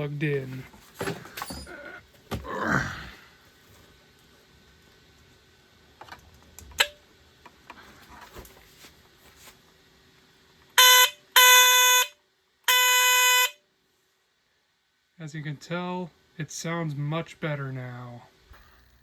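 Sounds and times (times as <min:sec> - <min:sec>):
smoke alarm buzzing horn: 0:10.7 - 0:13.7.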